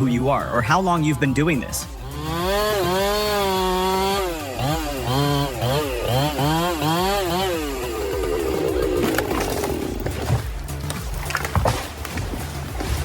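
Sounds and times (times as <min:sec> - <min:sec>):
chainsaw engine revving: 0:01.2 - 0:10.8.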